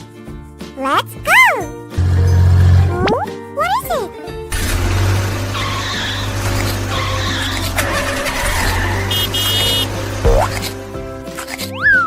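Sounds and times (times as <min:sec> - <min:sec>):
cartoon car engine running: 0:02.0 - 0:12.0
tyre squeal skids: 0:05.4 - 0:09.9.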